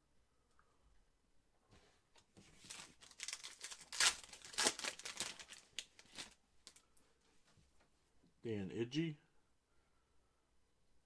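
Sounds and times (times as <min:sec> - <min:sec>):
foil wrapper tearing and crinkling: 0:02.5 - 0:06.8.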